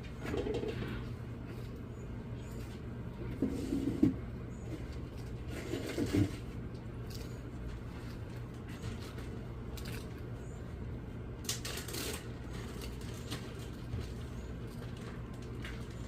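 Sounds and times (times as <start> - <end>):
animal eating crunching: 4.6 - 16.0.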